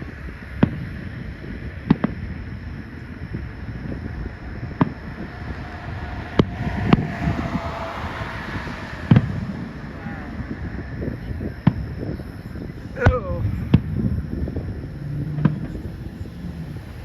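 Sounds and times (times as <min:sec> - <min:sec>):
wind on microphone: 0:00.8 - 0:17.0
low rumble: 0:02.0 - 0:14.0.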